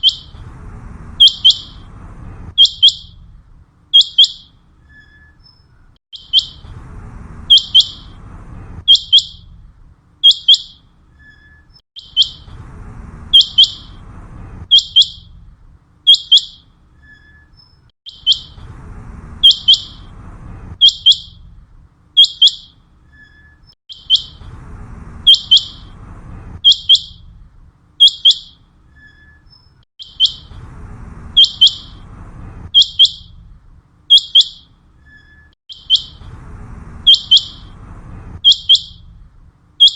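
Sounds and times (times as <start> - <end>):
quail calling: 0.0 - 0.3, 25.3 - 25.9, 31.4 - 32.0, 34.1 - 34.7, 35.7 - 36.2, 37.0 - 37.8.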